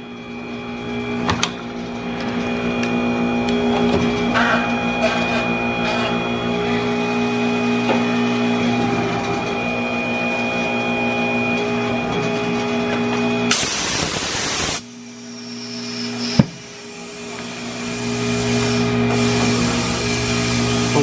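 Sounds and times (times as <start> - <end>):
tire-changing machine humming: 0.0 - 21.0
compressed air hiss: 13.5 - 21.0.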